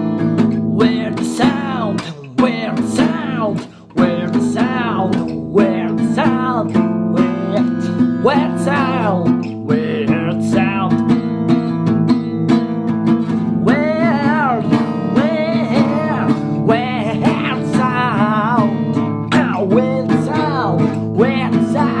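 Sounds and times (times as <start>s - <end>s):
person singing wordless lines: 0.0s - 22.0s
strummed acoustic guitar: 0.0s - 22.0s.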